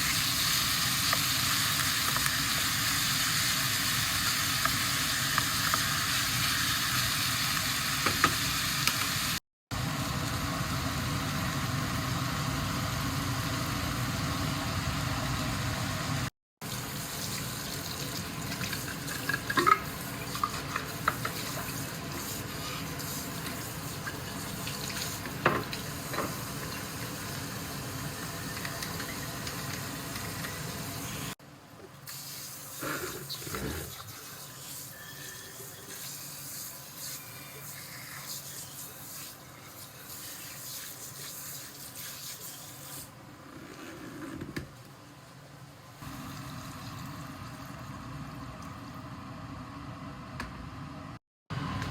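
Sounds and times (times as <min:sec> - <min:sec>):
steady sizzling hiss: 0:10.0 - 0:33.4.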